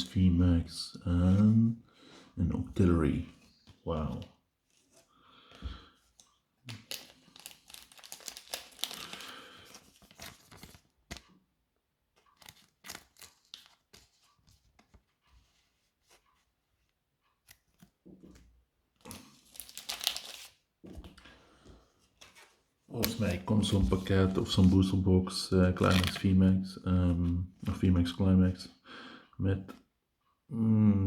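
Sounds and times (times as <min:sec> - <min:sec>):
plastic packaging crinkling: 0:06.7 - 0:11.2, 0:19.1 - 0:20.6, 0:25.8 - 0:26.2.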